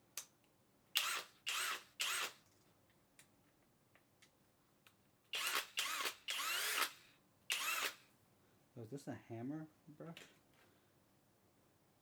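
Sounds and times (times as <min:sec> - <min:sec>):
cordless drill whining bursts: 0:01.0 - 0:02.4, 0:05.4 - 0:08.0.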